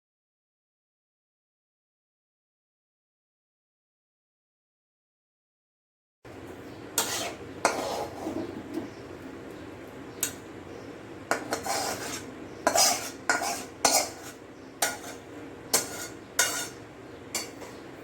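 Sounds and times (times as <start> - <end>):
metal utensil scraping a pan: 7.0 - 8.9, 11.3 - 17.9.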